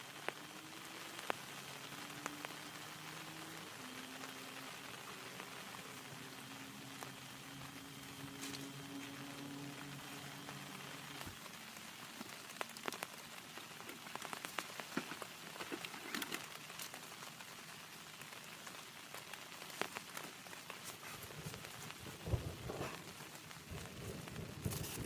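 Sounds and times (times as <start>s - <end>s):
heavy rain falling: 0.0s - 25.0s
low steady hum: 0.0s - 25.0s
raindrops tapping a surface: 0.0s - 25.0s.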